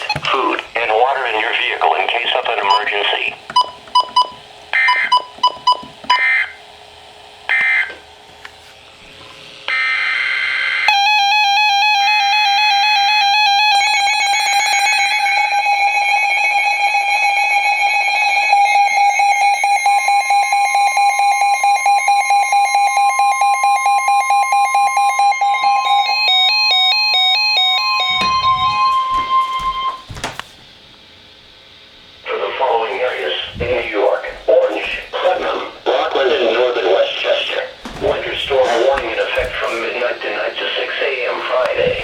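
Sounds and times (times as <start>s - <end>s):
pulsing electronic alarm tone: 3.6s - 6.6s, 7.5s - 8.0s, 9.7s - 30.1s
digital data burst squawks: 4.7s - 5.2s, 6.1s - 6.6s.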